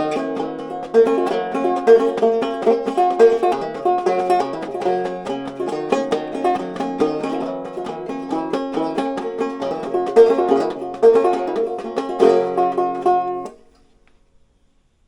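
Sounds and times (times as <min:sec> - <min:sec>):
banjo plucking: 0:00.0 - 0:13.8.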